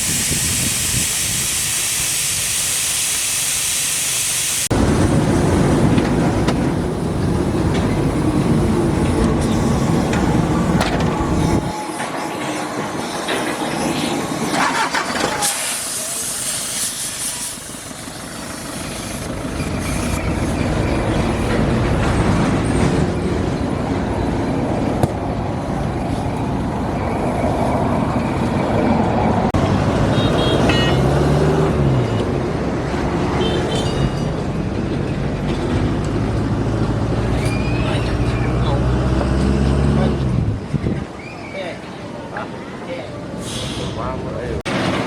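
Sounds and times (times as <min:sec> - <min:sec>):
large vehicle engine rumbling: 0:04.7 - 0:11.8, 0:14.4 - 0:41.2.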